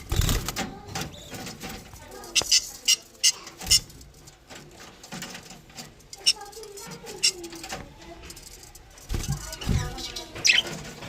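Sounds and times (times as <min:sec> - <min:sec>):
birds high-pitched chirps: 0:02.2 - 0:03.9, 0:06.1 - 0:07.7, 0:09.8 - 0:10.8.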